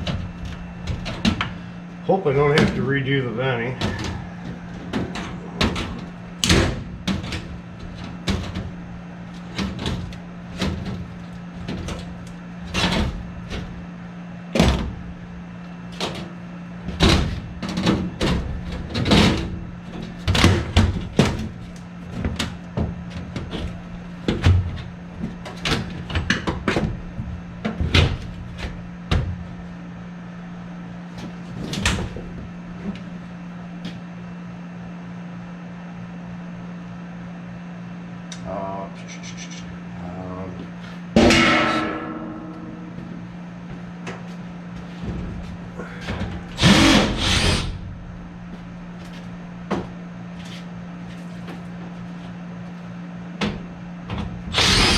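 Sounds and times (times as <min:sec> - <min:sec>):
steady low hum: 0:00.0 - 0:54.9
knocks and clatters of tools: 0:03.8 - 0:08.8, 0:16.0 - 0:29.4.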